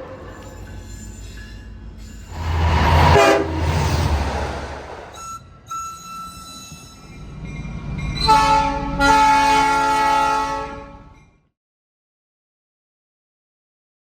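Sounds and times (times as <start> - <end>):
locomotive air horn chord: 2.4 - 4.8, 8.3 - 11.0.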